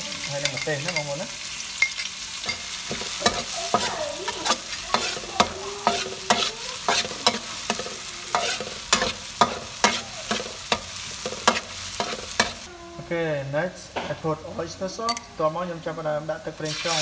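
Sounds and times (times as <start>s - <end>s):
garlic sizzling in hot oil: 0.0s - 12.7s, 16.6s - 17.0s
spatula clacking against pan: 1.8s - 12.6s
spatula scraping pan: 1.8s - 12.7s.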